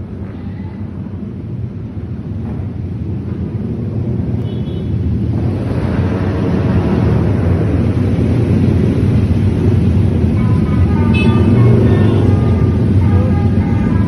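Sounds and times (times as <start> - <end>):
wind noise on microphone: 0.0 - 14.0
motorcycle running: 1.1 - 14.0
multi-tone horn: 10.9 - 13.8.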